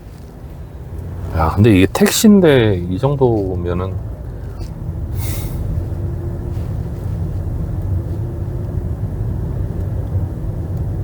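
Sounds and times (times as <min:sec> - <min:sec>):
car cabin engine and road rumble: 0:00.0 - 0:11.0
short hiss: 0:05.2 - 0:05.8.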